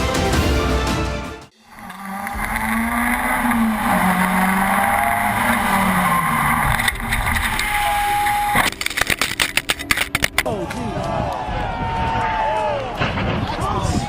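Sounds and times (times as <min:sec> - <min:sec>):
road noise: 0:01.7 - 0:10.5
vehicle engine droning: 0:02.2 - 0:08.8.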